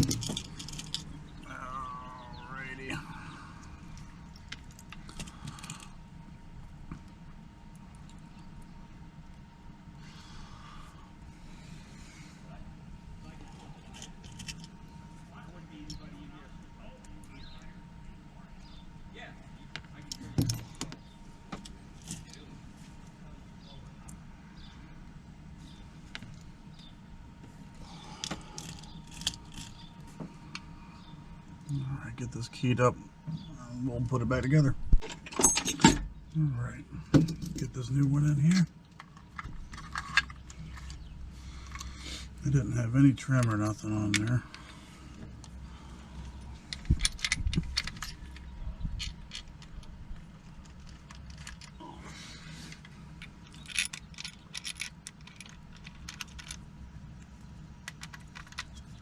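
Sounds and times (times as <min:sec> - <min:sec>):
lock parts clicking and scraping: 0:00.0 - 0:01.2, 0:03.9 - 0:06.0, 0:13.5 - 0:14.8, 0:19.8 - 0:22.4, 0:28.0 - 0:31.1, 0:34.9 - 0:36.3, 0:37.1 - 0:37.7, 0:38.3 - 0:42.4, 0:43.2 - 0:51.8, 0:52.4 - 0:59.0
low hum: 0:00.0 - 0:59.0.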